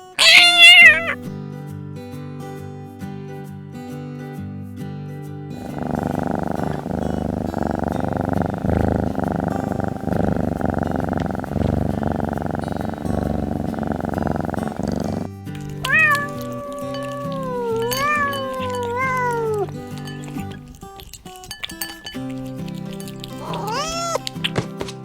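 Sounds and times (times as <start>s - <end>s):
cat meowing: 0.0s - 1.3s, 5.6s - 19.8s, 23.3s - 24.3s
cat purring: 0.0s - 1.3s, 5.6s - 24.6s.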